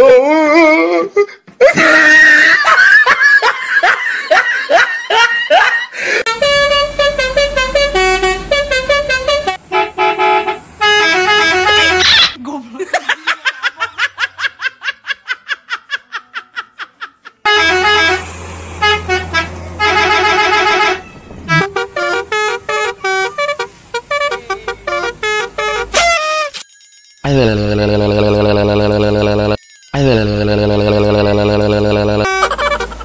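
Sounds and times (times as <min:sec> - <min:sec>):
musical bus horn playing tunes: 0:06.1 - 0:12.4, 0:17.4 - 0:26.6, 0:27.3 - 0:33.0.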